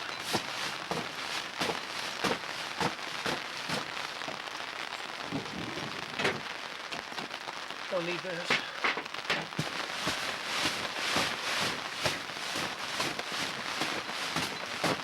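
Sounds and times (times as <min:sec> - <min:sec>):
sleet and rain falling: 0:00.0 - 0:15.0
sharp taps and crackles: 0:00.2 - 0:04.4, 0:08.4 - 0:15.0.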